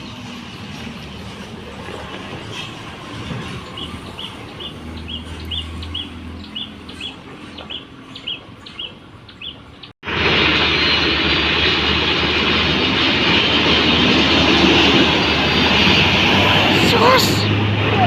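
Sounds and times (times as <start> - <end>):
engine humming: 0.0 - 18.0
small bird chirping: 3.7 - 9.9.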